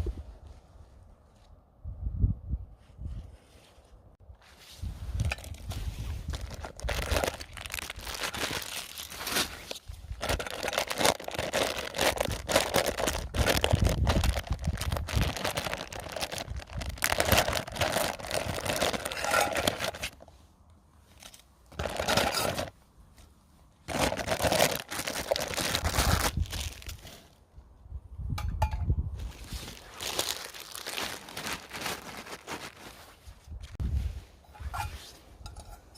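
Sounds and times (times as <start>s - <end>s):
gusty wind buffeting microphone: 0.0s - 1.1s, 1.7s - 3.5s, 4.7s - 8.2s, 12.2s - 17.6s, 25.8s - 30.0s, 33.3s - 35.6s.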